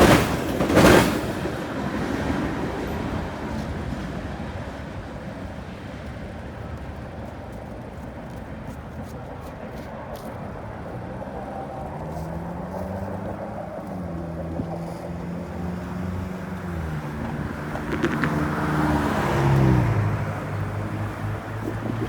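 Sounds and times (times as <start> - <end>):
freight train rumble: 0.0 - 22.0
vehicle engine pulling away: 11.8 - 22.0.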